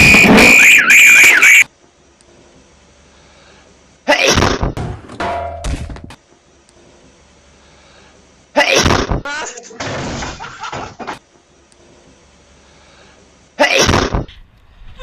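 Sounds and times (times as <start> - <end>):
loud sudden sound: 0.0 - 1.7
loud sneeze: 4.1 - 4.6, 8.6 - 9.1, 13.6 - 14.3.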